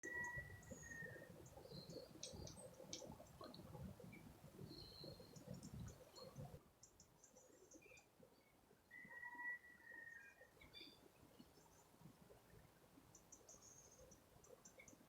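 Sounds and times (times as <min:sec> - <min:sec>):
thin bird whistle: 0:00.0 - 0:02.5, 0:08.9 - 0:11.0
songbird chirps: 0:00.0 - 0:15.0.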